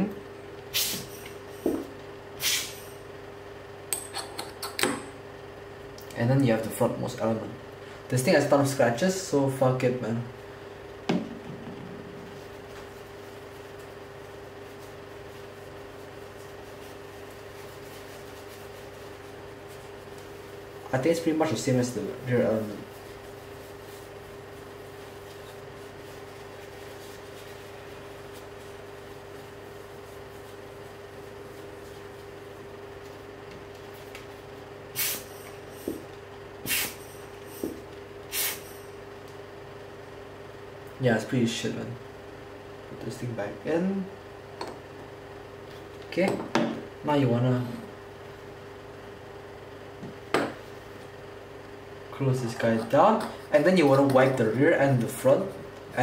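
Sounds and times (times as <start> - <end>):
steady hum with mid-pitched tone: 0.0 - 56.0
hiss: 0.7 - 1.2, 2.4 - 3.0, 35.0 - 36.0, 36.6 - 37.7, 38.3 - 38.9.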